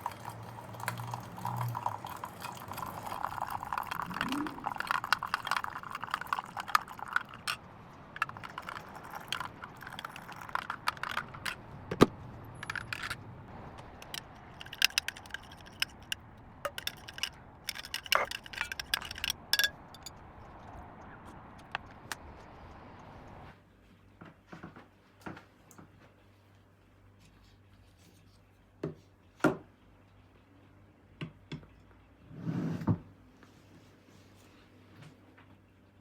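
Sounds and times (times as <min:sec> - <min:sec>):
small household items clinking: 0:00.0 - 0:20.2.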